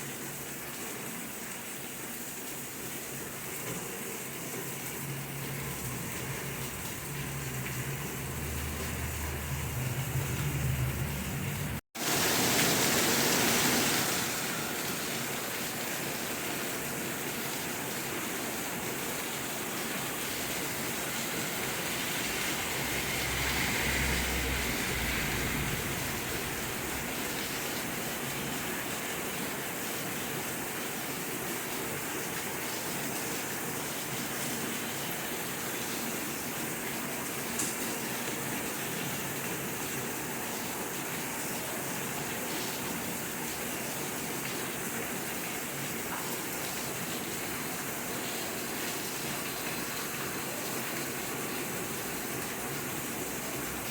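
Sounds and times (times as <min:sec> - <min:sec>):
steady rain falling: 0:00.0 - 0:53.9.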